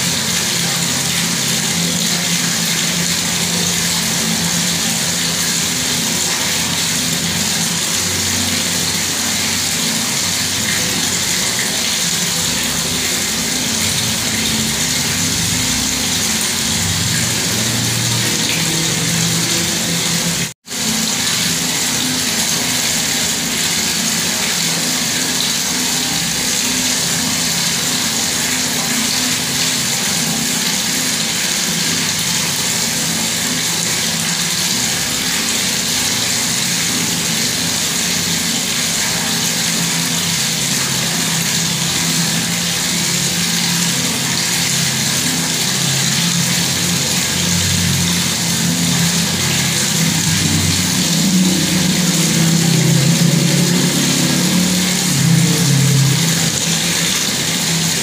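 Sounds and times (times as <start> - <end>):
water tap running: 0.0 - 58.0.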